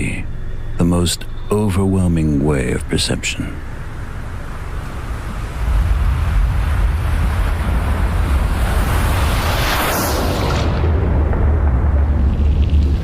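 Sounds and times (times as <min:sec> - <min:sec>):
deep steady rumble: 0:00.0 - 0:13.0
rushing noise: 0:00.0 - 0:13.0.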